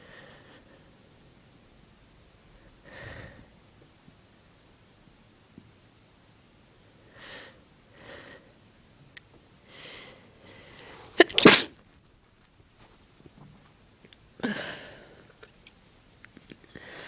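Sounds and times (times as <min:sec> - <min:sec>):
person sneezing: 0:11.1 - 0:11.8.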